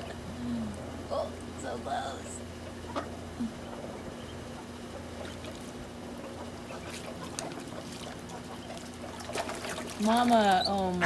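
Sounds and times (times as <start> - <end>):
water splashing and trickling: 6.6 - 11.0.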